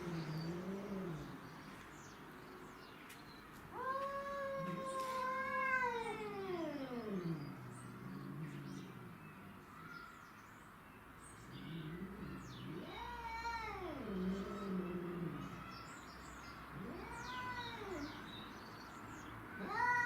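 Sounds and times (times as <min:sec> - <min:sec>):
cat meowing: 0:03.8 - 0:07.4, 0:12.7 - 0:15.7, 0:16.8 - 0:18.3, 0:19.6 - 0:20.0.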